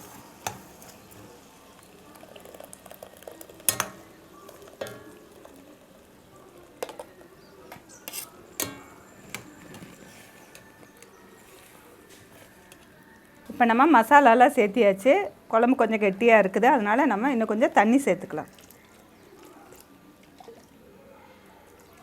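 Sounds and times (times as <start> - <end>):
spoon scraping and clinking pan: 7.7 - 10.7.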